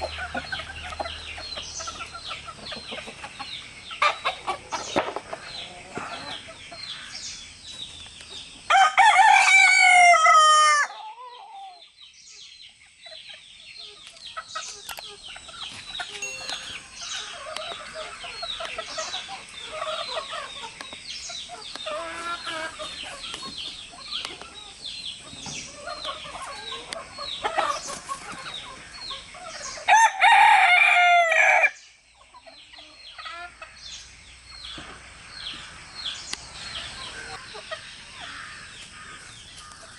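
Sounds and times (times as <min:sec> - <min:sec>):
hens clucking: 0:00.0 - 0:07.2, 0:13.1 - 0:30.0, 0:32.2 - 0:39.9
rooster crowing: 0:08.7 - 0:11.0, 0:29.9 - 0:31.8.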